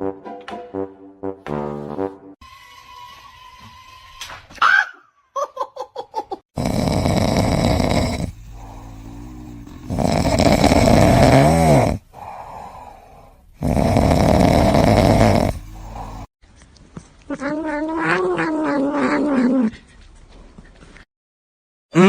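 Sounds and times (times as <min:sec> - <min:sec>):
dog snoring: 0:06.6 - 0:12.4, 0:13.6 - 0:16.3
wavering breaths: 0:06.7 - 0:11.4, 0:12.0 - 0:16.3.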